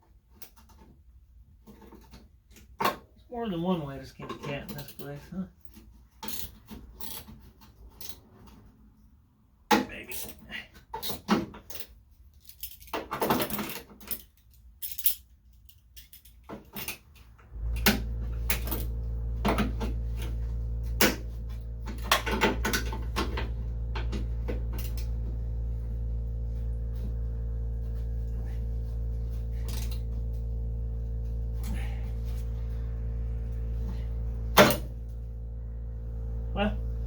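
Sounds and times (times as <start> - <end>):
metal tools clinking and scraping: 10.1 - 17.4
steady low hum: 17.4 - 37.0.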